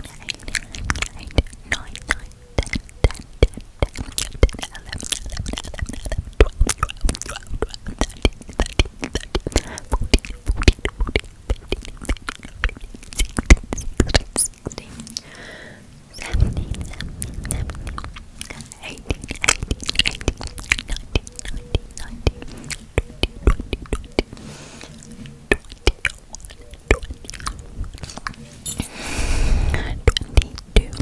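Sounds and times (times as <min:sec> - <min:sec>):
wet mouth clicks and smacks: 0:00.0 - 0:15.4, 0:16.1 - 0:28.9, 0:29.6 - 0:31.0
soft breathing: 0:09.4 - 0:10.0, 0:14.7 - 0:18.8, 0:24.2 - 0:25.5, 0:28.0 - 0:30.1.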